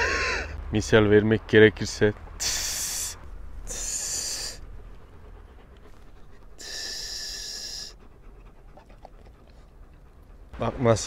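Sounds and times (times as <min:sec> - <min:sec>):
man hissing through teeth: 0:06.6 - 0:08.0.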